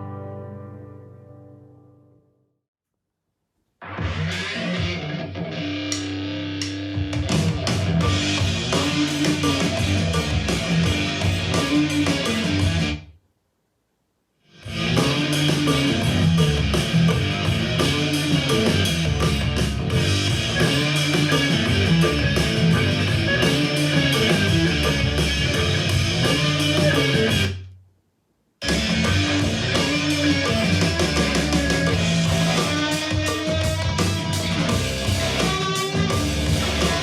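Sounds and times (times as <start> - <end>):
rock music through speaker: 3.8 - 13.0, 14.5 - 27.6, 28.6 - 37.0.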